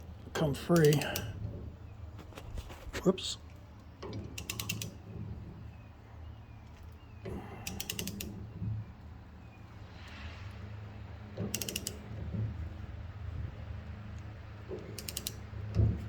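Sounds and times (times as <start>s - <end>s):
ratchet wrench clicking: 4.4s - 5.0s, 7.6s - 8.4s, 11.5s - 12.0s, 14.9s - 15.5s.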